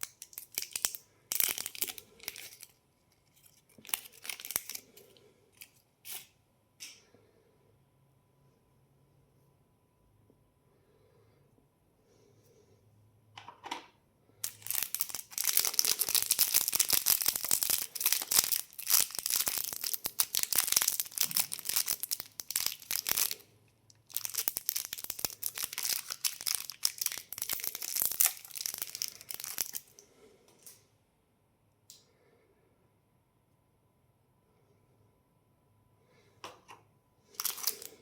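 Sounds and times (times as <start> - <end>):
candy packaging crinkling: 0.0 - 6.3, 14.4 - 30.0, 37.3 - 38.0.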